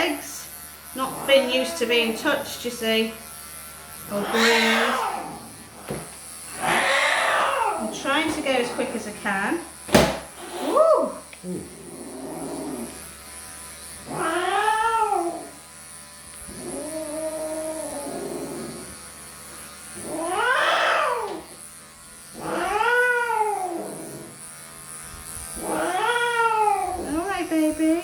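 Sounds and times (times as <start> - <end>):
cat yowling: 4.1 - 5.4, 6.6 - 8.0, 10.4 - 11.3, 14.1 - 15.6, 20.1 - 21.4, 22.4 - 23.8, 25.6 - 27.1.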